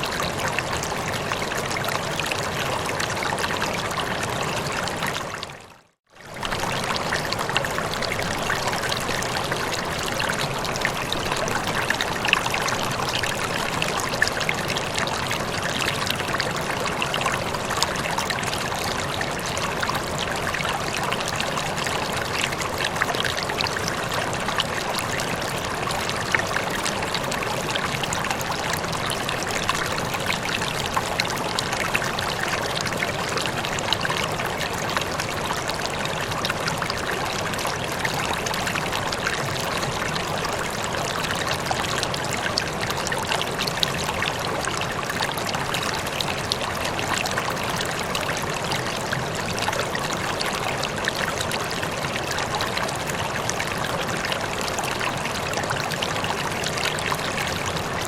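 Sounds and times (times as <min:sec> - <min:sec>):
stream flowing: 0:00.0 - 0:58.0.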